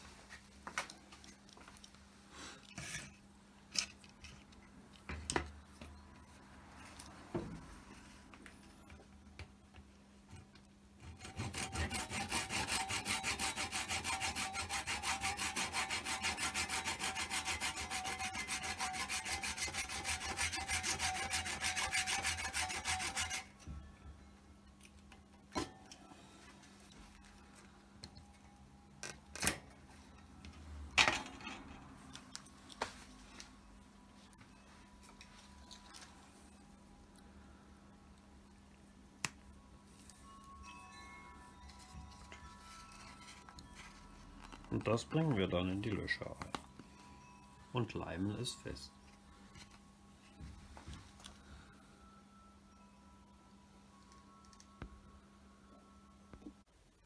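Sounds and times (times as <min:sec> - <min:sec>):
hand saw cutting wood: 0:11.0 - 0:23.6.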